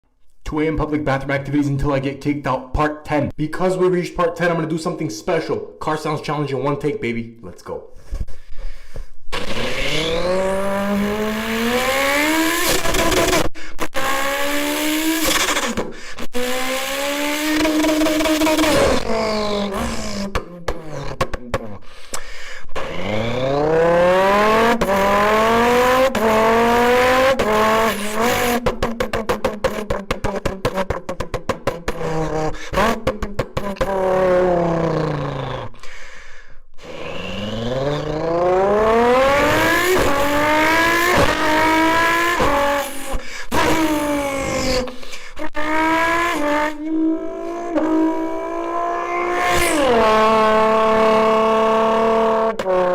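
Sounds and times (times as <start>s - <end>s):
person imitating car engine: 15.2s - 35.8s, 36.8s - 52.9s.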